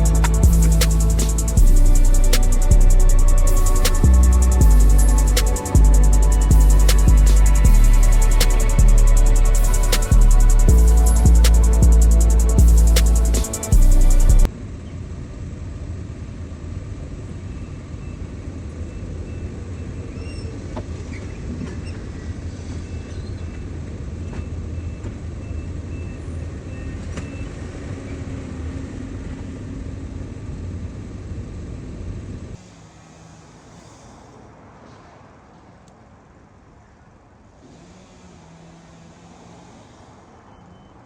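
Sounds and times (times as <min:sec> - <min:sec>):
large engine running: 0:00.0 - 0:14.5.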